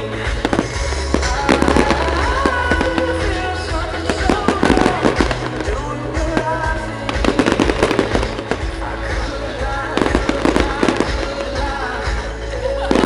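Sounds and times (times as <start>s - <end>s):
fireworks banging and crackling: 0.0s - 13.0s
loud pop music: 0.0s - 13.0s.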